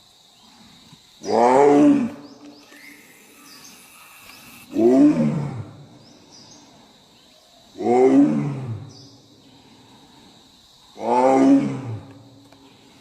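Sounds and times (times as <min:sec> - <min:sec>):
faint chirps: 0:02.1 - 0:04.8, 0:05.8 - 0:07.8.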